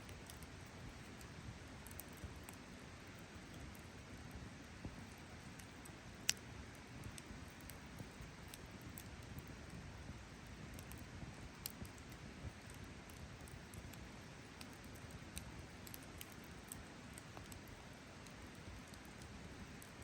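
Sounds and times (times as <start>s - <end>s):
campfire crackles and pops: 0.0s - 20.0s
campfire low steady hiss: 0.0s - 20.0s.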